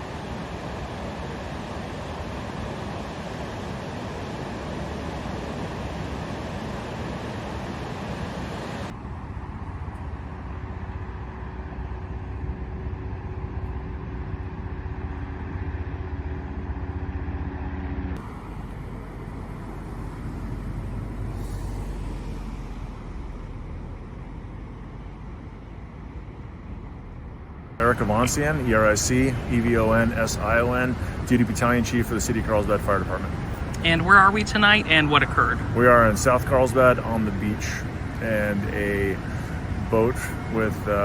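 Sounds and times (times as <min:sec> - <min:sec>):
quiet low rumble: 0:08.9 - 0:40.8
vehicle engine idling: 0:08.9 - 0:41.0.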